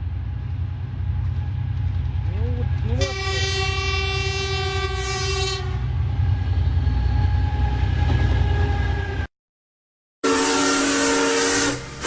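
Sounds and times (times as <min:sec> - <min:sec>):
moving train rumbling: 0:00.0 - 0:09.3, 0:10.2 - 0:12.0
train horn: 0:02.9 - 0:05.9, 0:10.2 - 0:12.0.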